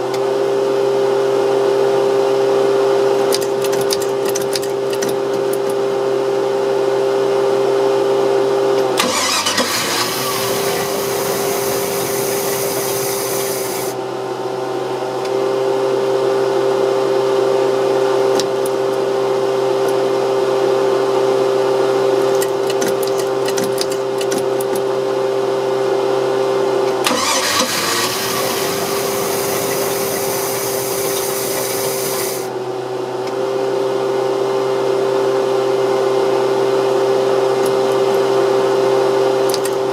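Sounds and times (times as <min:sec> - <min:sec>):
loud hiss: 0:10.3 - 0:14.0, 0:28.9 - 0:32.5.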